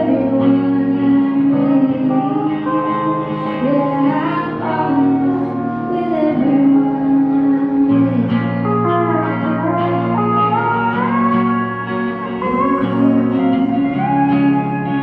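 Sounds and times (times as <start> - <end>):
slow guitar music: 0.0 - 15.0.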